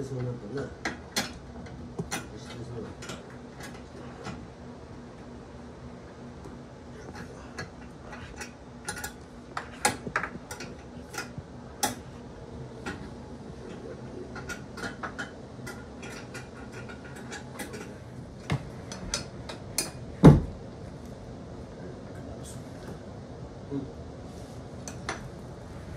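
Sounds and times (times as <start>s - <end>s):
hardware clicking and clinking: 0.2s - 4.4s, 7.0s - 12.1s, 13.7s - 20.1s
heavy thump: 20.2s - 20.6s.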